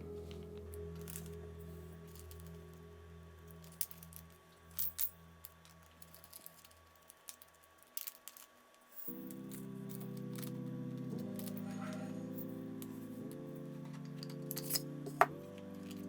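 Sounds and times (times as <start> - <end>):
soft background music: 0.0 - 8.2, 8.9 - 16.0
small parts clicking and tapping: 3.5 - 16.0.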